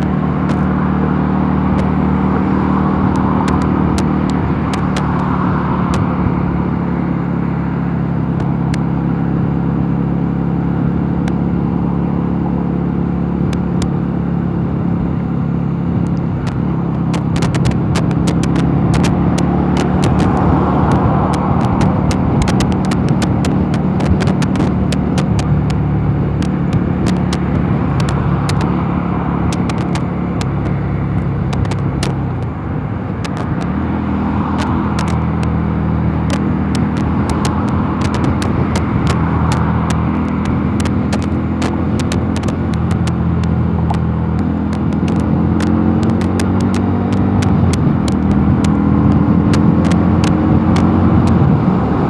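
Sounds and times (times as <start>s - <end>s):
wind rush: 0.0s - 9.5s, 13.5s - 52.0s
motorcycle engine cruising: 0.0s - 52.0s
sharp clicks: 3.0s - 6.1s, 16.0s - 32.5s, 33.1s - 51.6s.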